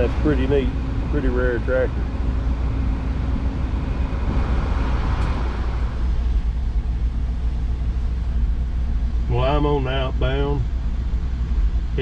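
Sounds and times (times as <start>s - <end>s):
truck engine rumbling: 0.0s - 12.0s.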